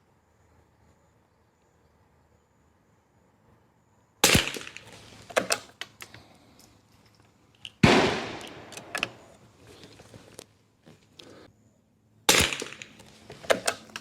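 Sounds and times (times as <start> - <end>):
rifle shots echoing: 4.2 - 4.9, 7.8 - 9.4, 12.3 - 13.0.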